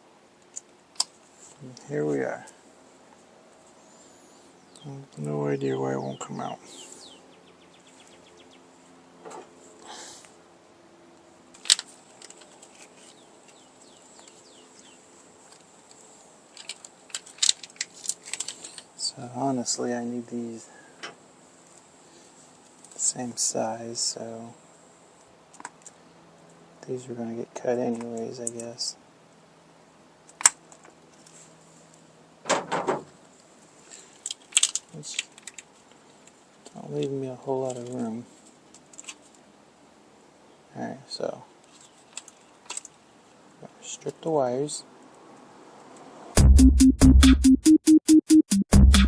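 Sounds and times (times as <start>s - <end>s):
bird chirping: 4.6s - 8.6s.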